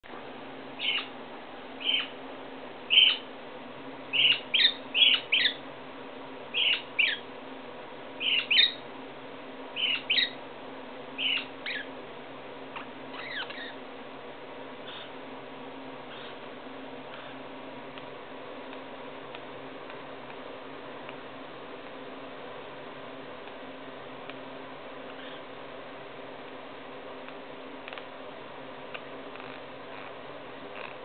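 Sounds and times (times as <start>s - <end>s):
steady low hum: 0.0s - 31.0s
parakeet giving high chirps: 0.8s - 1.2s, 1.8s - 2.2s, 2.9s - 3.3s, 4.1s - 5.6s, 6.5s - 7.2s, 8.2s - 8.8s, 9.8s - 10.4s, 11.2s - 11.9s, 12.8s - 13.8s, 14.8s - 15.2s, 16.1s - 16.4s, 17.2s - 17.4s, 25.1s - 25.5s.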